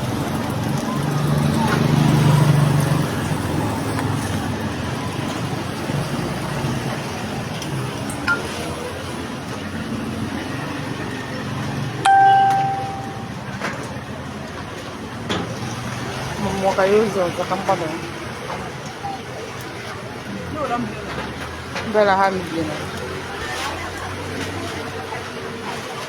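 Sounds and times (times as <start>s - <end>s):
passing traffic: 0.0s - 25.6s
short clear beep: 12.0s - 13.4s.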